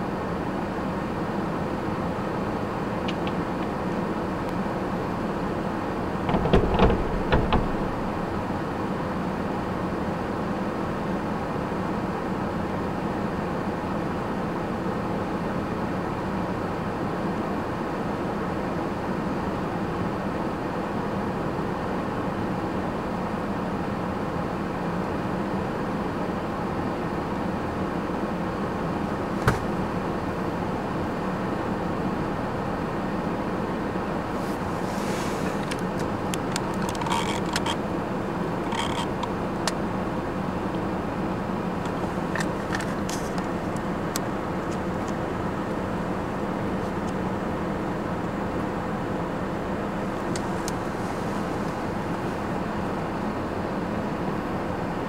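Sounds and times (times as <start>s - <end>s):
vehicle engine and road noise: 0.0s - 55.0s
sharp knock: 29.4s - 29.7s.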